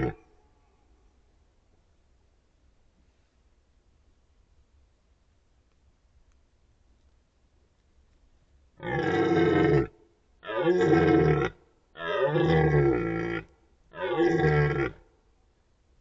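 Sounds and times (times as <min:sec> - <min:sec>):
deer stag roaring: 0:00.0 - 0:00.2, 0:08.8 - 0:15.0.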